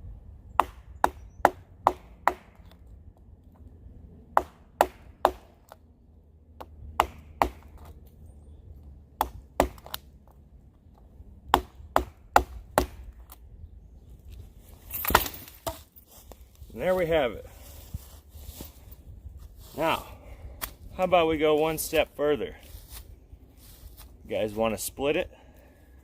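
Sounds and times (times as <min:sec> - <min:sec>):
knife chopping into wood: 0:06.6 - 0:07.9, 0:09.2 - 0:10.0.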